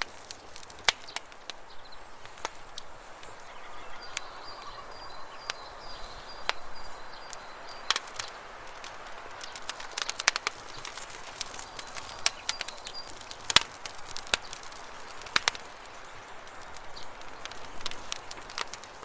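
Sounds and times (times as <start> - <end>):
faint high chirping: 1.8 - 8.3
whistled bird call: 2.6 - 7.9.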